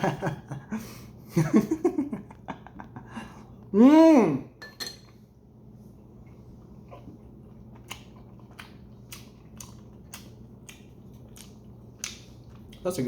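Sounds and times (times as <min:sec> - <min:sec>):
low steady hum: 0:00.0 - 0:13.0
wet chewing clicks: 0:07.3 - 0:13.0.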